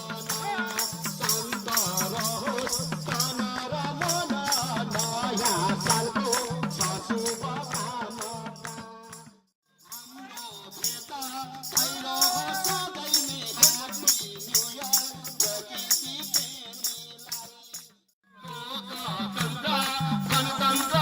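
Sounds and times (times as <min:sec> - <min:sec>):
music with busy percussion beat: 0:00.0 - 0:18.0, 0:19.1 - 0:21.0.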